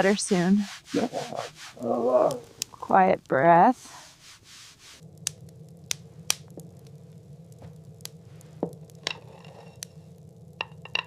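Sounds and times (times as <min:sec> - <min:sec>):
wood fire crackling: 0:00.0 - 0:11.0
low steady rumble: 0:04.7 - 0:11.0.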